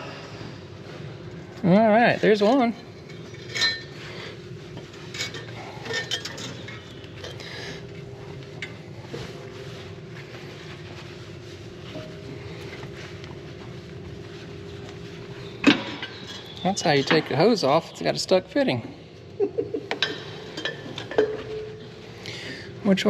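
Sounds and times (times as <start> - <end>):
steady low hum: 0.0 - 23.0
metal tools clinking and clanking: 2.2 - 7.9, 15.6 - 17.6, 19.9 - 22.0.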